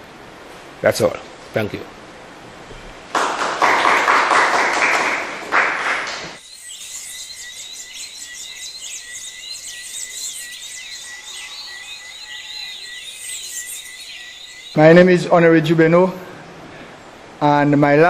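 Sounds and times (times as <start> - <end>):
audience applauding: 3.1 - 6.4
birds chirping: 6.4 - 15.2
steady high-pitched trill: 6.4 - 16.2.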